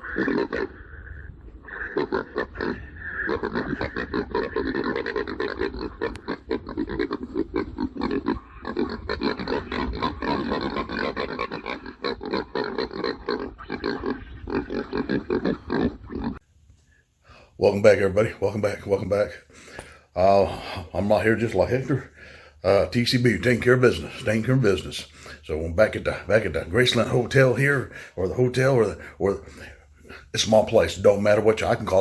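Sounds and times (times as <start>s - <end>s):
hogs squealing and grunting: 0.0s - 16.4s.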